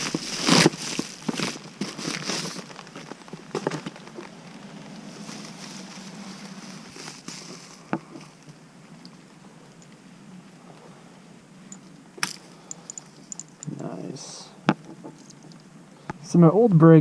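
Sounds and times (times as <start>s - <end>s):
faint steady hiss: 0.0s - 17.0s
handling clicks and knocks: 11.7s - 13.8s.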